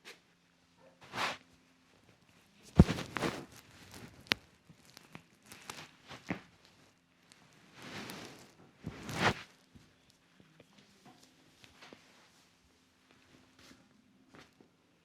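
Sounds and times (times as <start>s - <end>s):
hands rubbing skin and hair: 2.8s - 4.4s, 7.7s - 9.4s.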